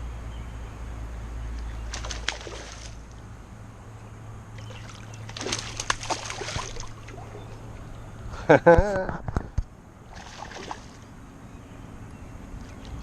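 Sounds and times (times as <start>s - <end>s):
low steady rumble: 0.0s - 13.0s
creek water splashing: 1.6s - 3.3s, 4.5s - 8.0s, 10.0s - 11.2s.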